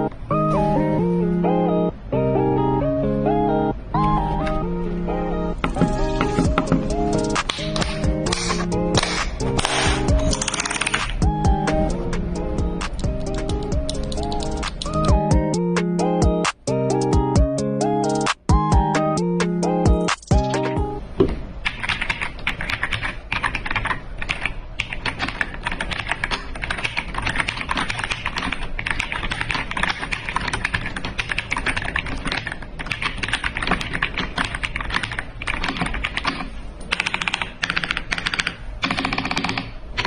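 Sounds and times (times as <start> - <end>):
mechanical keyboard typing: 5.7 - 11.4, 12.8 - 15.2, 21.6 - 40.0.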